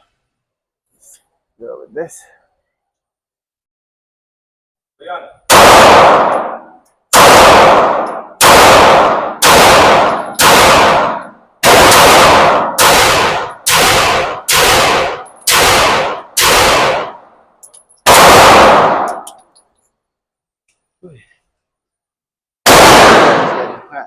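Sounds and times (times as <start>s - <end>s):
pistol shots echoing indoors: 5.5s - 19.5s, 22.6s - 23.9s.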